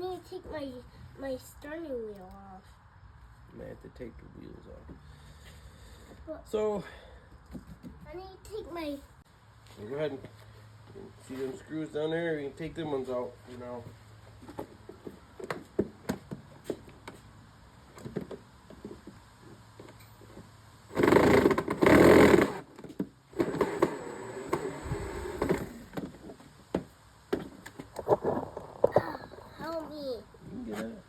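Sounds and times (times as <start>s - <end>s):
cordless drill bursts: 20.9s - 22.7s, 23.3s - 25.9s.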